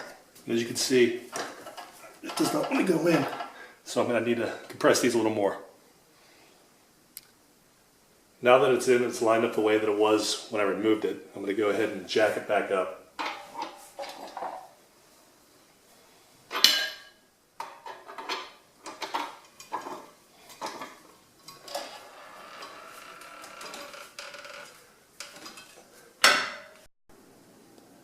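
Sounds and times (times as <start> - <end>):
metal rattle: 17.6 - 26.8.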